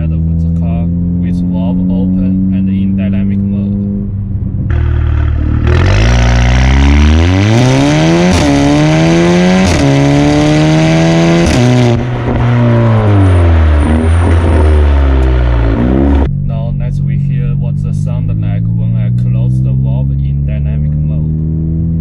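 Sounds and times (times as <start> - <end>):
car engine revving: 0.0 - 22.0
exhaust cracks: 0.0 - 22.0.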